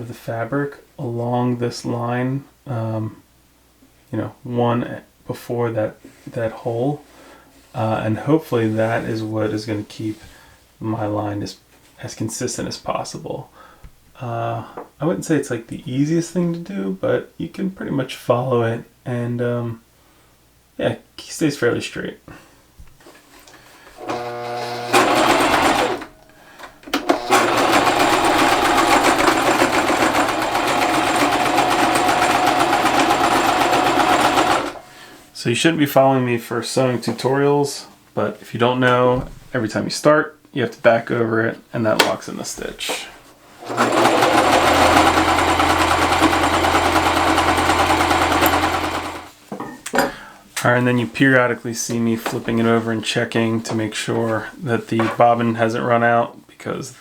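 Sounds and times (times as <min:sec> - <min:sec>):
electric sewing machine stitching: 0:24.0 - 0:35.0, 0:43.6 - 0:49.3.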